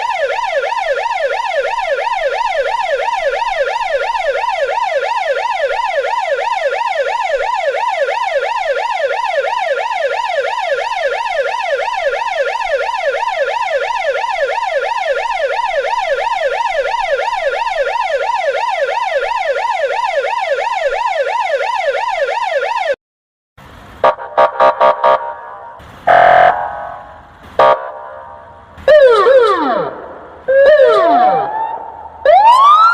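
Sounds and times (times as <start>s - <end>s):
police siren fast wail: 0.0s - 23.0s, 24.0s - 32.9s
short loud quacking honks: 26.1s - 28.2s.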